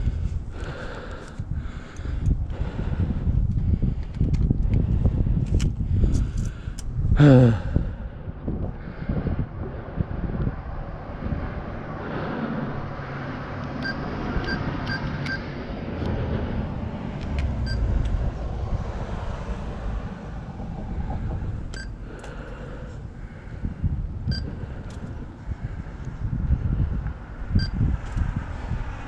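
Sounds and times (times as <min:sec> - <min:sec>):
traffic rumble: 0:00.0 - 0:29.0
keypad beeps: 0:13.8 - 0:15.4.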